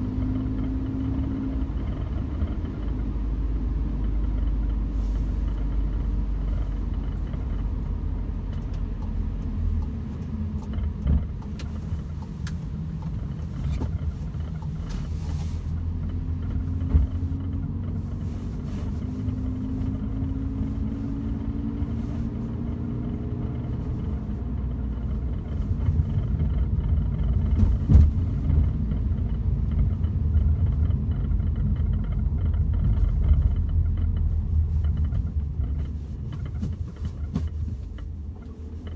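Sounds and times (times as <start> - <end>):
car road and engine rumble: 0.0 - 38.9.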